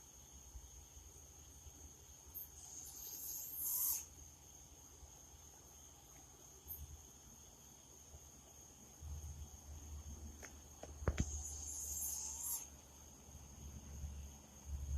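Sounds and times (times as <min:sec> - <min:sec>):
faint high-pitched whine: 0:00.0 - 0:14.9
owl screeching: 0:02.6 - 0:04.1, 0:11.2 - 0:12.7.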